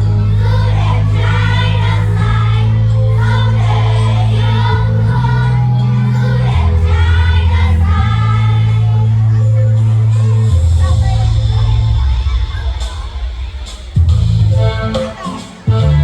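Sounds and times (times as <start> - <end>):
children singing together: 0.0 - 9.5
backing track with loud bass line: 0.0 - 16.0.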